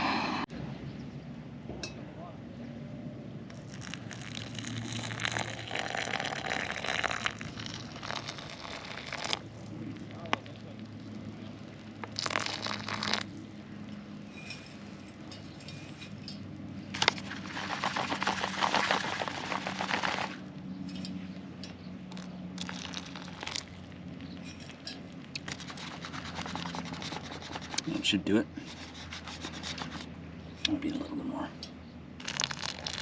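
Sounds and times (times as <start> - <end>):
foil pouch crinkling: 12.1 - 13.3, 17.0 - 20.4, 22.2 - 23.9, 25.4 - 27.8, 32.2 - 33.0.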